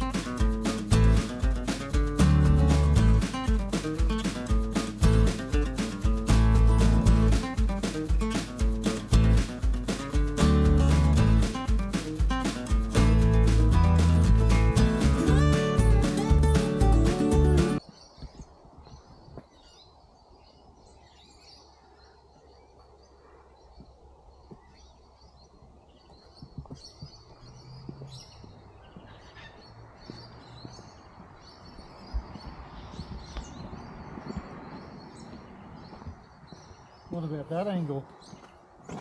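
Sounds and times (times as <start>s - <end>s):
birds chirping and calling: 25.9s - 38.6s.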